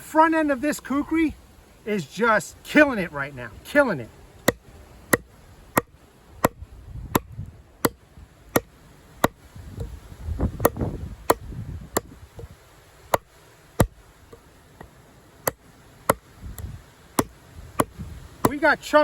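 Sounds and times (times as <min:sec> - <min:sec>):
blade chopping into log: 0:04.4 - 0:09.9, 0:10.6 - 0:12.5, 0:13.1 - 0:14.0, 0:17.2 - 0:18.6.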